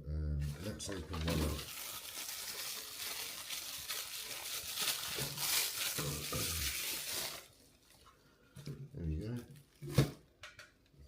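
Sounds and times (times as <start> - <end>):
packaging rustling and crinkling: 0.4 - 8.2.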